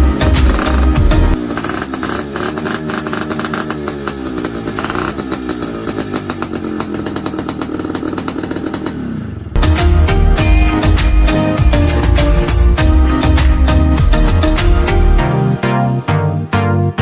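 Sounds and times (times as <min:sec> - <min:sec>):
two-stroke engine revving: 0:00.0 - 0:10.2.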